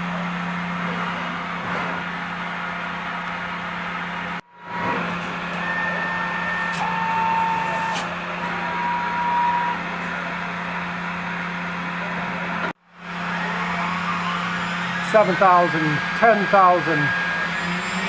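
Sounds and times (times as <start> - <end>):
machine hum: 0.0 - 18.0
faint whining tones: 4.4 - 12.1.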